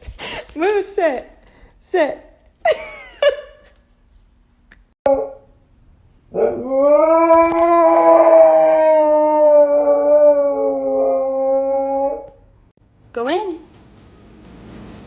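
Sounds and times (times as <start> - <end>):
dog howling: 6.3 - 12.4.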